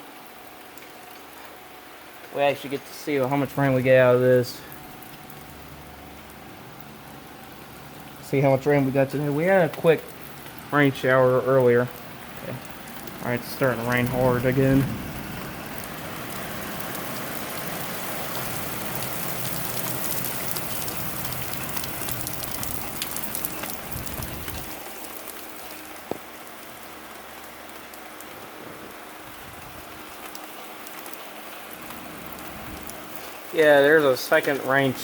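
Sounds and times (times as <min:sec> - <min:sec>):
heavy rain pouring: 0:00.0 - 0:35.0
low rumble: 0:13.1 - 0:16.7.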